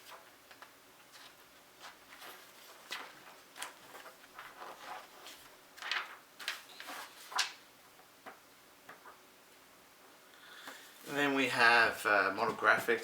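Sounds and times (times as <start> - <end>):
paper and plastic rustling: 0.0 - 7.6.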